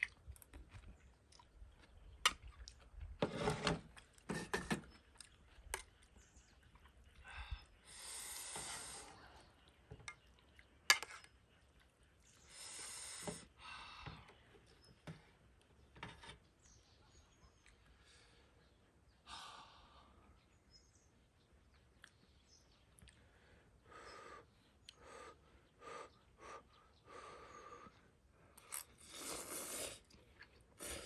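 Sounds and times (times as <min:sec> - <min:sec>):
chewing: 0:00.0 - 0:03.0, 0:05.0 - 0:07.2.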